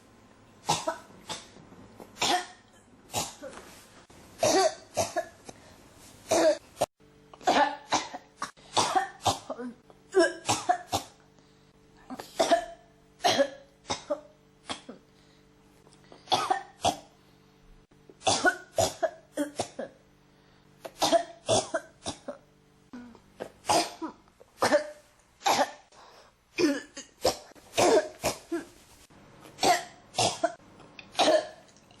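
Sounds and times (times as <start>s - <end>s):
person coughing: 0.7s - 1.6s, 2.2s - 3.8s, 4.4s - 5.6s, 6.3s - 11.2s, 12.0s - 15.1s, 16.3s - 17.1s, 18.2s - 20.0s, 20.8s - 22.4s, 23.0s - 25.9s, 26.6s - 28.8s, 29.6s - 31.6s.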